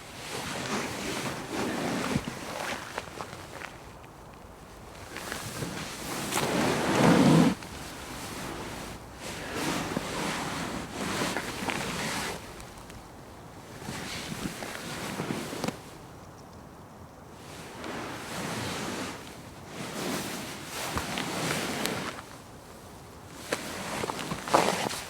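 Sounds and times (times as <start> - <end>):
cushions rustling: 0.0 - 15.9, 17.4 - 25.0
couch frame creaking: 5.0 - 12.4.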